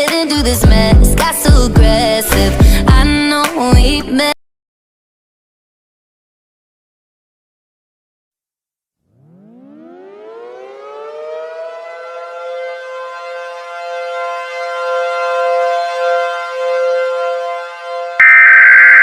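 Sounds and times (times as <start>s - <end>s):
civil defense siren wailing: 9.1s - 19.0s.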